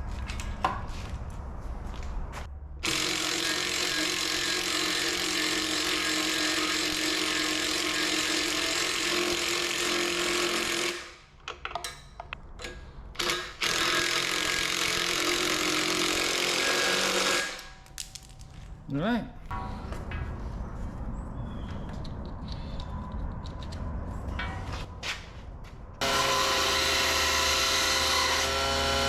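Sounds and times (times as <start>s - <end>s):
power tool grinding: 26.0s - 29.0s.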